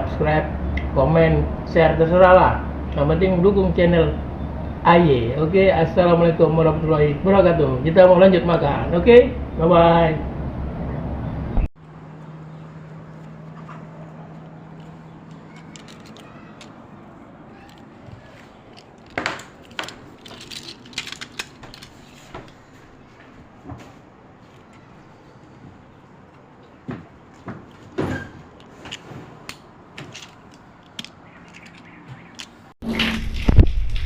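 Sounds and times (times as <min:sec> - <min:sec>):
clam shells clicking and knocking: 0:14.8 - 0:16.8, 0:17.6 - 0:22.3, 0:30.1 - 0:32.6.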